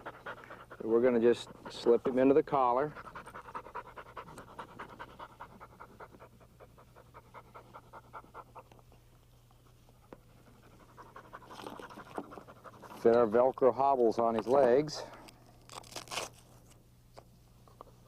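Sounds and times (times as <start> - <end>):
dog panting: 0.0 - 13.3
low steady hum: 0.0 - 18.0.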